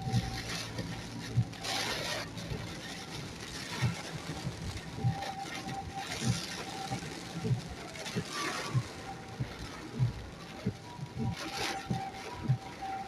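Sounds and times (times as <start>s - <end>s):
tyres hissing on wet road: 0.0s - 13.0s.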